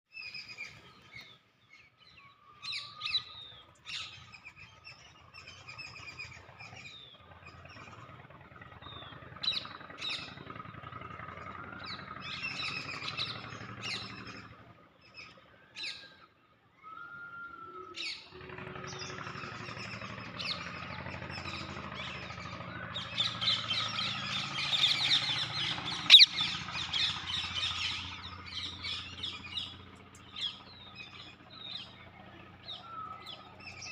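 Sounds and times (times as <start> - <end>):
parrot chirping: 25.9 - 27.1.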